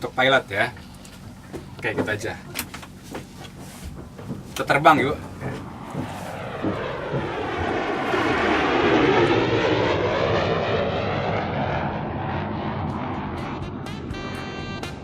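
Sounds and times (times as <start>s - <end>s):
aircraft passing overhead: 4.0s - 15.0s.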